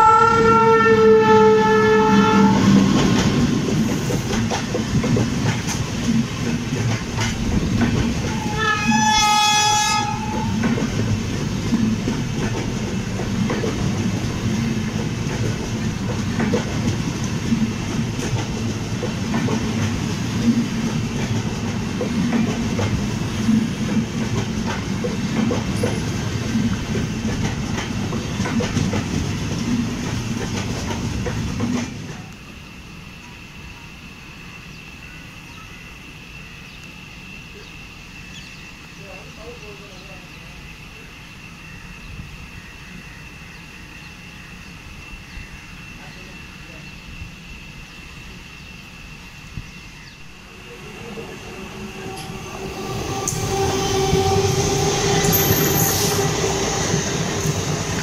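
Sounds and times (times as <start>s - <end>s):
train horn: 0.0s - 3.0s, 8.3s - 10.8s, 50.8s - 57.0s
train rumble and wheels clacking: 0.0s - 58.0s.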